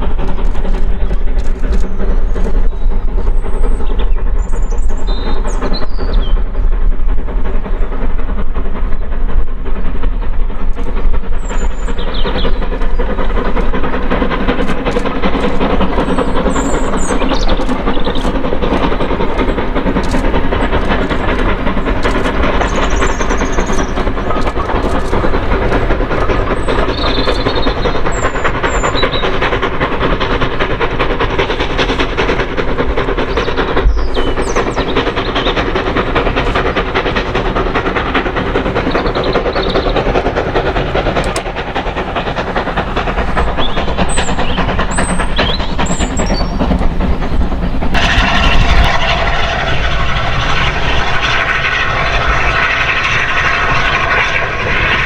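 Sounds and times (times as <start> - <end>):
clicks over rail joints: 0.0 - 3.7, 10.6 - 48.2
train wheels rumbling: 0.0 - 55.0.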